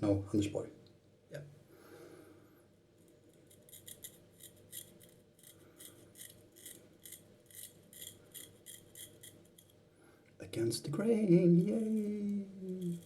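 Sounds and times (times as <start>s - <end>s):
razor scraping stubble: 3.0s - 9.7s, 11.6s - 13.0s.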